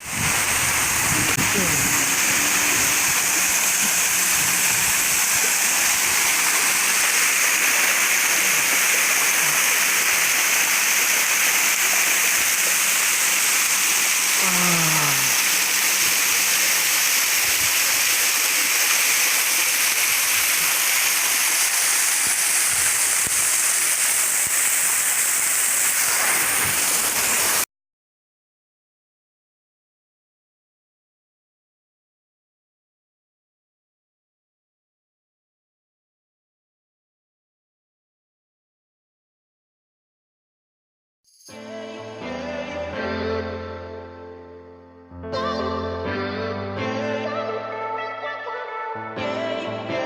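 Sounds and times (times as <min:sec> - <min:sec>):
waterfall rushing: 0:00.0 - 0:27.6.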